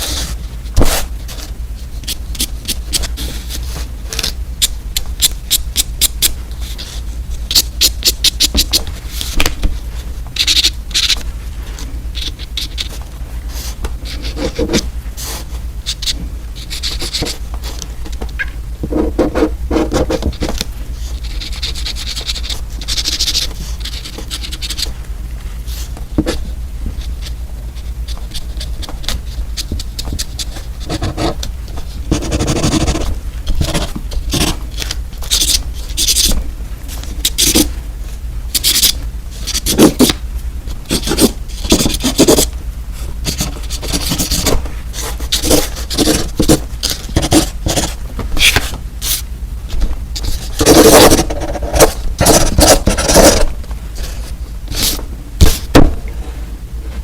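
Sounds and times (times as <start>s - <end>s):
close scraping and scratching: 6.6s - 37.8s, 43.2s - 57.0s.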